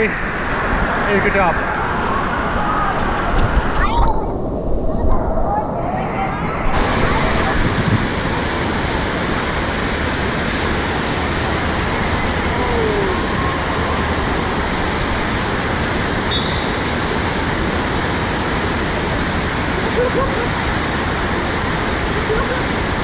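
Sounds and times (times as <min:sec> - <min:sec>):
rushing falling water: 0:06.7 - 0:23.0.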